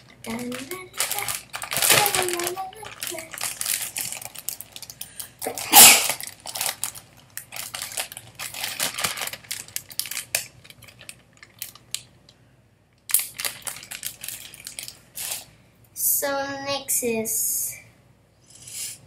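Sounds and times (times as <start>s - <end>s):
plastic bag crinkling: 0.0s - 12.3s, 13.1s - 15.5s.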